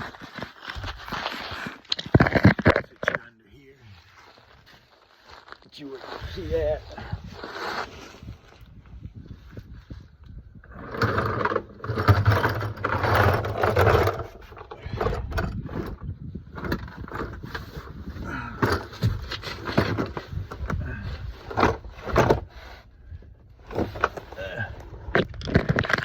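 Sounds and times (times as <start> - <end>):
scraping and rattling handling noises: 0.0 - 3.3, 10.7 - 22.7, 23.6 - 26.0.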